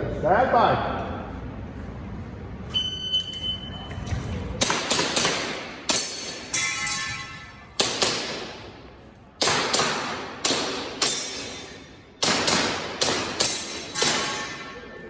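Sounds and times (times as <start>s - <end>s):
airsoft pistol shots: 4.6s - 6.4s, 7.8s - 8.7s, 9.4s - 11.5s, 12.2s - 14.3s.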